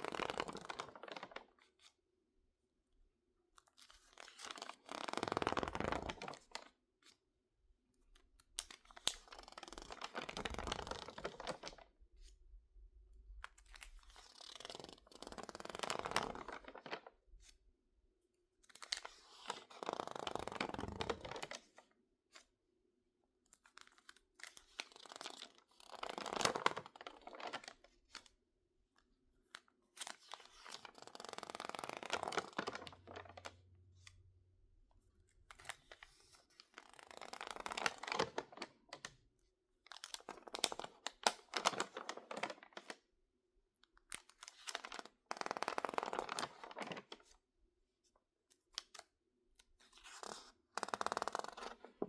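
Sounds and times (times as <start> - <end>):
magazine pages crackling and rustling: 0.0 - 1.9, 3.8 - 6.7, 8.6 - 11.8, 13.7 - 17.1, 23.8 - 28.3, 30.0 - 34.2, 35.5 - 39.2, 39.9 - 43.0, 44.1 - 47.3, 49.8 - 52.0.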